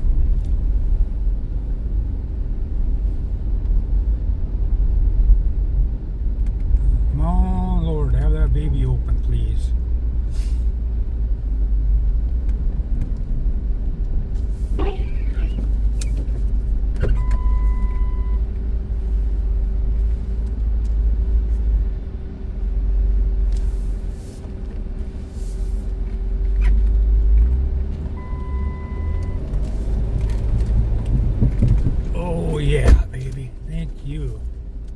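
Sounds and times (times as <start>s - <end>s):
car engine rumble inside cabin: 0.0s - 34.9s
beep: 28.2s - 29.4s.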